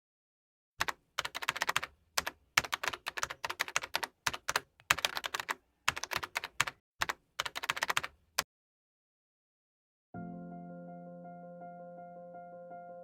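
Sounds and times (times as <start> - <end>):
rapid keyboard typing: 0.8 - 8.5.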